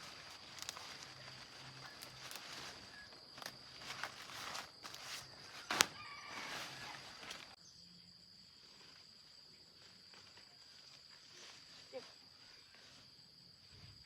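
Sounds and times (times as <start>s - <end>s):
rustling and handling noises: 0.0s - 7.6s
high insect drone: 0.0s - 14.0s.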